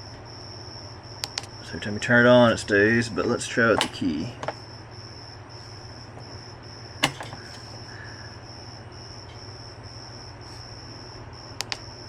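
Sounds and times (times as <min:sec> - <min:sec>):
high pulsing chirp: 0:00.0 - 0:12.0
steady low hum: 0:00.0 - 0:12.0
sharp click: 0:01.2 - 0:01.5, 0:07.0 - 0:07.6, 0:11.6 - 0:11.9.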